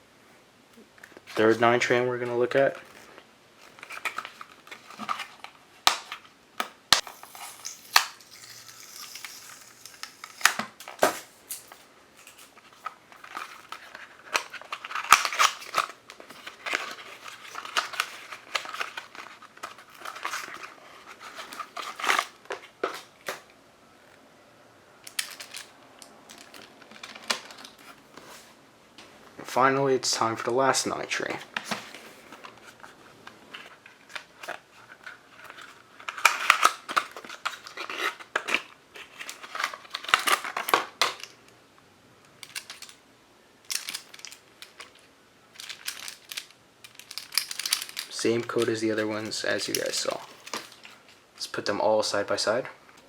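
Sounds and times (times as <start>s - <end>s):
plastic packaging crinkling: 6.9s - 23.5s, 31.6s - 41.4s, 43.7s - 51.2s.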